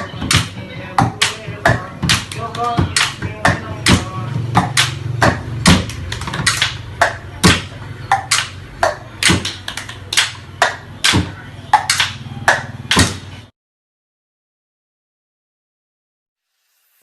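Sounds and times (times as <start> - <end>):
knocks and taps on household objects: 0.2 - 13.2.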